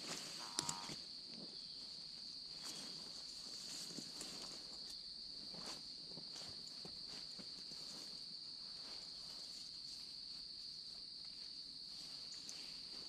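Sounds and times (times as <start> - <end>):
crickets chirping: 0.0 - 13.0
tent clips clicking: 0.5 - 1.0.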